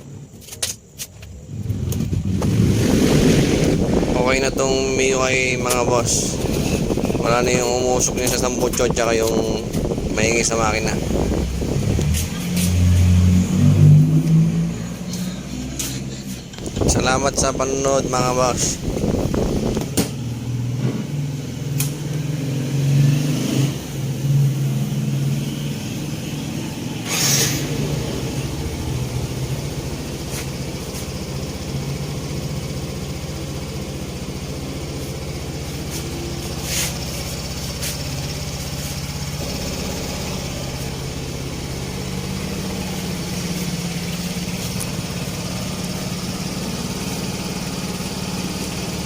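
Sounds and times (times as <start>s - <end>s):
scooter engine idling: 3.2s - 12.4s, 14.7s - 20.6s, 25.6s - 49.0s.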